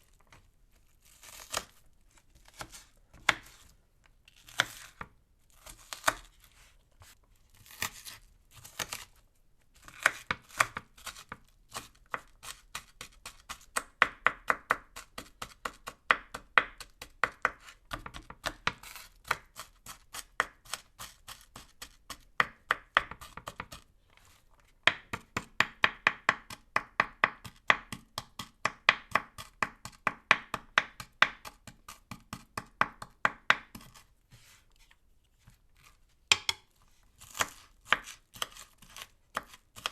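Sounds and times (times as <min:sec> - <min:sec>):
knife chopping on cutting board: 0:02.4 - 0:03.7, 0:04.5 - 0:06.3, 0:09.8 - 0:23.8, 0:24.9 - 0:34.6, 0:35.8 - 0:39.9.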